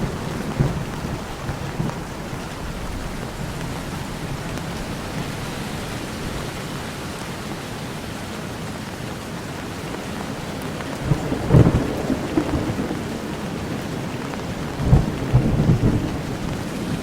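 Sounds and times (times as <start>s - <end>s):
thunder rumbling: 0.0s - 6.8s, 10.5s - 17.0s
heavy rain: 0.0s - 17.0s.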